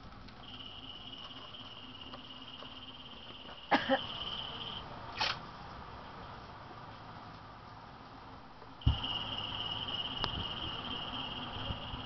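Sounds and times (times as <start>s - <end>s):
high steady trill: 8.8s - 12.0s.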